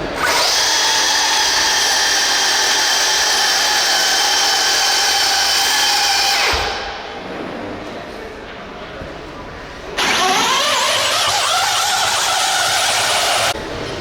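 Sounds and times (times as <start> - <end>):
electric motors whining: 10.0 - 13.6.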